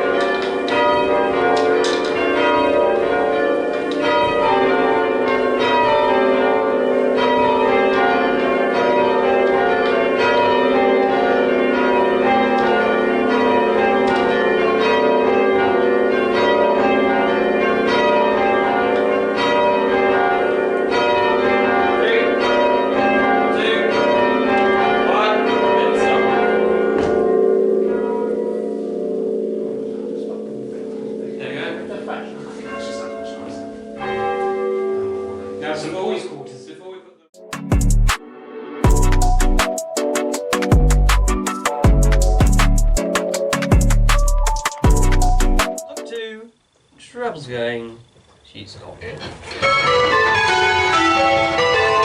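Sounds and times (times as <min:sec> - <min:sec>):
church bells change ringing: 0:00.0 - 0:36.7, 0:49.5 - 0:52.0
bells lingering hum: 0:23.0 - 0:35.6.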